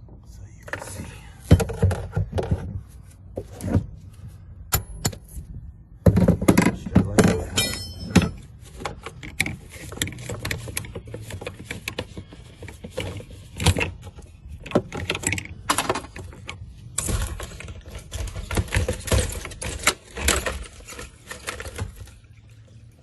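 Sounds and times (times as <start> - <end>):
parts rattling: 6.0 - 22.9
hand tools tapping and clattering: 6.1 - 14.0.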